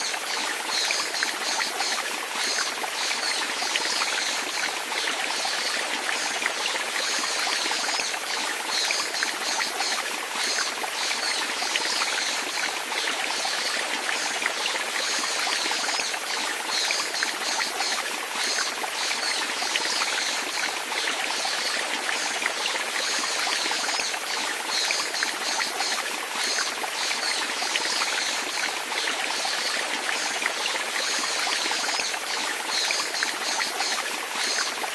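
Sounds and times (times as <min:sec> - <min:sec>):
stream flowing and trickling: 0:00.0 - 0:34.9.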